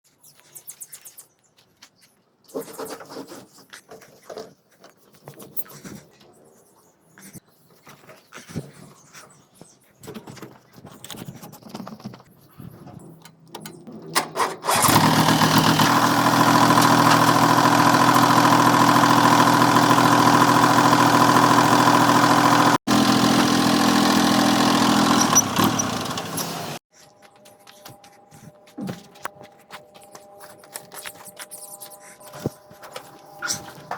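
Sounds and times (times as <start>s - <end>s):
tractor engine idling: 14.6s - 26.8s.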